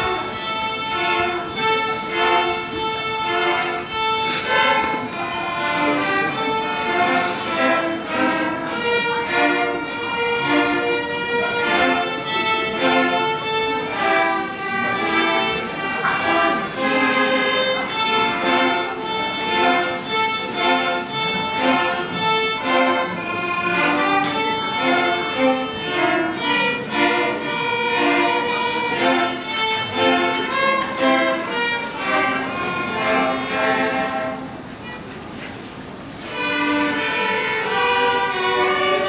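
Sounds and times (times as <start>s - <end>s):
children's instrumental ensemble: 0.0s - 35.0s, 36.2s - 39.0s
violins: 0.0s - 39.0s.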